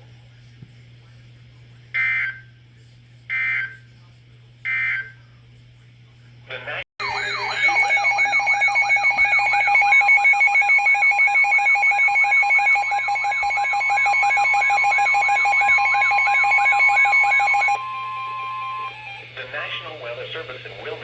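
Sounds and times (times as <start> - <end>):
sweeping siren tone: 7.0 - 19.9
pulsing beeps: 7.0 - 20.0
steady warning tone: 7.0 - 21.0.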